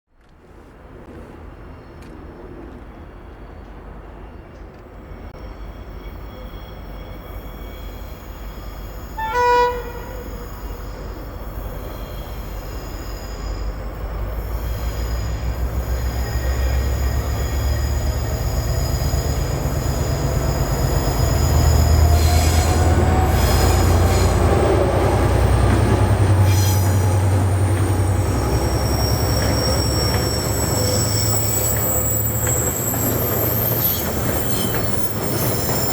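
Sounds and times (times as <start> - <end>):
diesel locomotive engine rumble: 0.4 - 35.9
locomotive horn blast: 9.2 - 10.4
wheel squeal: 10.2 - 35.9.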